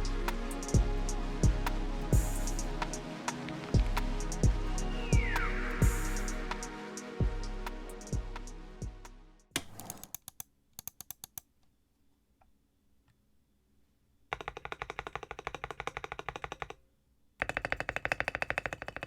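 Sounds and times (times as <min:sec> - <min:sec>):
music: 0:00.0 - 0:09.5
mechanical keyboard typing: 0:14.3 - 0:16.8.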